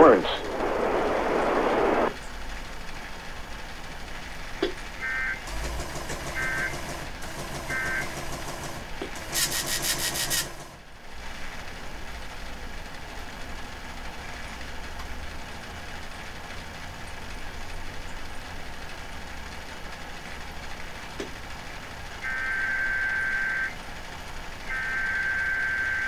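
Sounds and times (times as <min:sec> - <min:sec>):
electronic buzzing: 0:00.0 - 0:02.2
pulsing buzz: 0:00.0 - 0:02.2
steady low hiss: 0:00.0 - 0:06.2.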